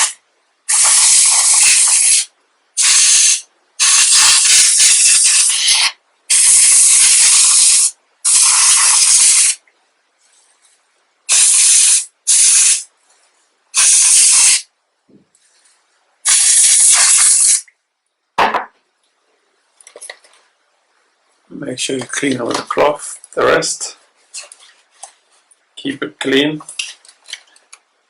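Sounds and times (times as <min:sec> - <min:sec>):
compressed air spraying: 0:00.0 - 0:09.6, 0:11.3 - 0:12.9, 0:13.7 - 0:14.7, 0:16.2 - 0:17.6
knock: 0:18.4 - 0:18.8.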